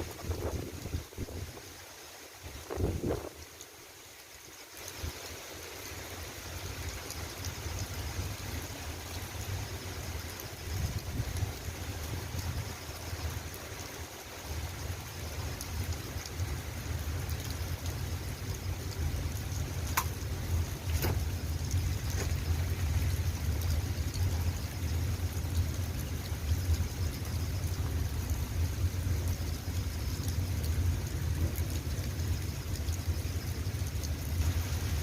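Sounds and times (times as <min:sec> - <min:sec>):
steady rain falling: 0:00.0 - 0:35.0
sharp drips: 0:03.1 - 0:35.0.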